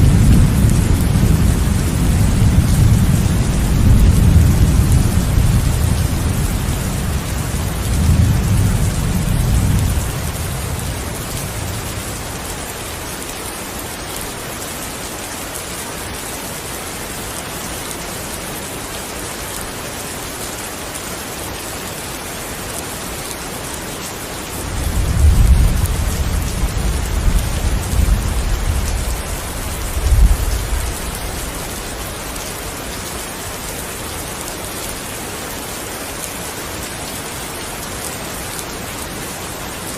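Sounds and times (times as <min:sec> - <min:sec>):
thunder rumbling: 0:00.0 - 0:12.7, 0:24.6 - 0:33.0
heavy rain: 0:00.0 - 0:39.9.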